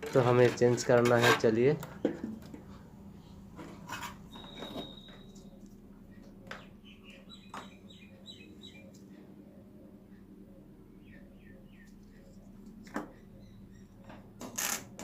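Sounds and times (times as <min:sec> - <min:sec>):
low hum: 0:02.3 - 0:14.1
small birds chirping: 0:04.3 - 0:14.4.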